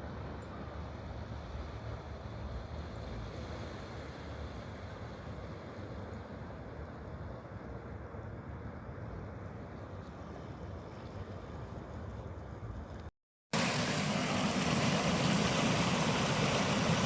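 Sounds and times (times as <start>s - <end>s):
rushing water: 13.6s - 17.0s.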